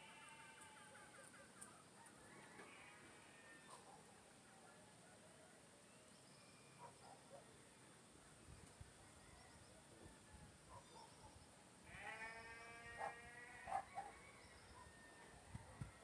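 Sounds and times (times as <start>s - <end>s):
farm animal drawn-out cry: 0.0s - 1.6s, 2.3s - 4.0s, 11.8s - 14.3s
faint bird chirps: 5.8s - 7.5s.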